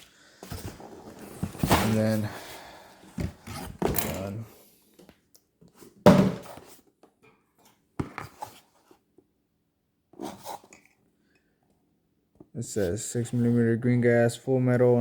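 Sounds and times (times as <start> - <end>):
packaging knocks and thumps: 6.1 - 6.7.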